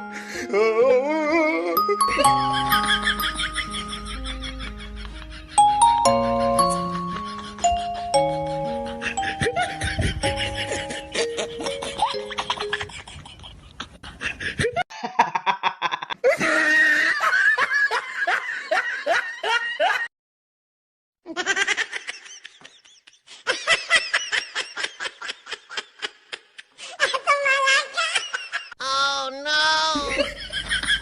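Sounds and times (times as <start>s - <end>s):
people laughing: 2.1s - 20.0s, 30.0s - 31.0s.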